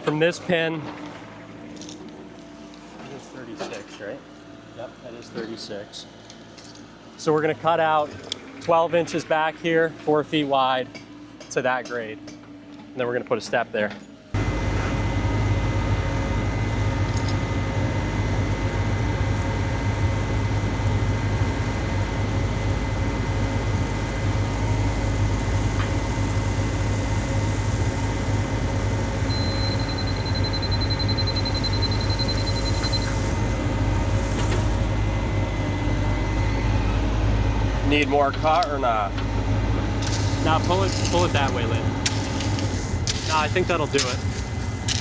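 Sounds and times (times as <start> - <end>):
construction machine engine humming: 14.1 - 45.0.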